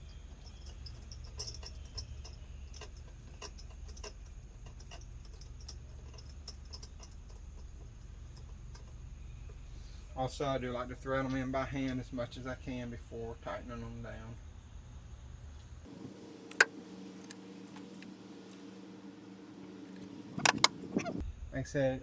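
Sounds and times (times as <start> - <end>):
spark plugs clicking and tapping: 16.5 - 18.1.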